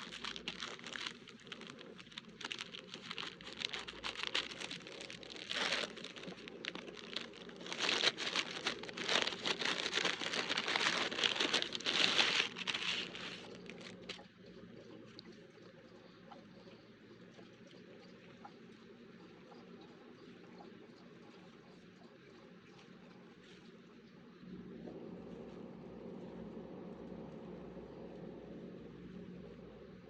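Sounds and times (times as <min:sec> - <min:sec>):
packaging crinkling and rustling: 0:00.0 - 0:14.2.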